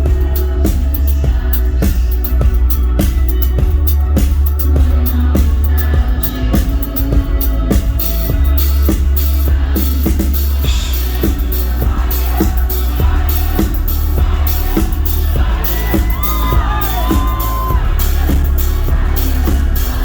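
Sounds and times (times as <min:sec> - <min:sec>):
live band playing: 0:00.0 - 0:20.0
high voices sliding: 0:10.9 - 0:20.0.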